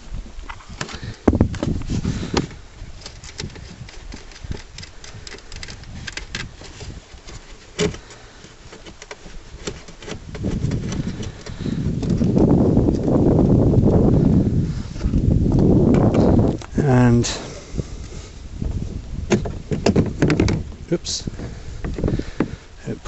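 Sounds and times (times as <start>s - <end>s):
handling rustle: 0.0s - 13.5s, 14.1s - 23.0s.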